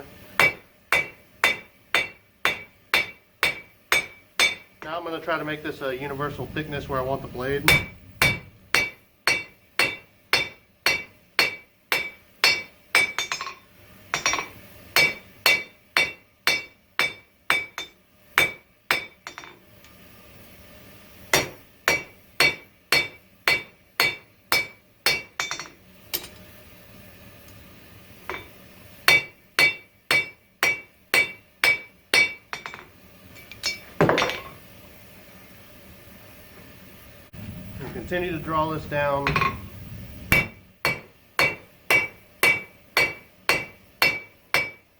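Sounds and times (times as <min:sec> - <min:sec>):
hammer striking steel on anvil: 0:00.4 - 0:04.8, 0:06.3 - 0:19.6, 0:21.3 - 0:26.4, 0:28.2 - 0:34.6, 0:38.5 - 0:44.8
burst of rough noise: 0:37.4 - 0:40.8.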